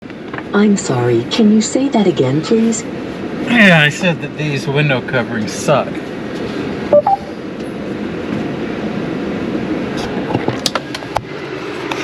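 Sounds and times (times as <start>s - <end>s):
rising two-note electronic tone: 7.0s - 7.3s.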